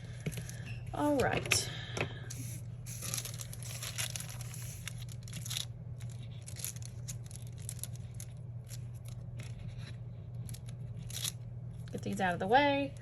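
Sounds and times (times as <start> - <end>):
steady low hum: 0.0 - 13.0
paper crinkling rustle: 2.4 - 12.2.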